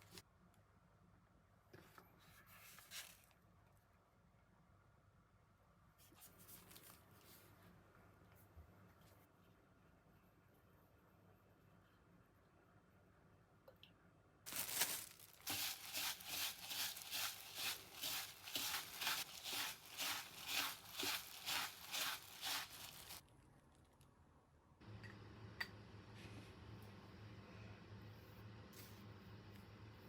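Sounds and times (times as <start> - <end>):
knife sawing crunchy bread crust: 15.5 - 23.2.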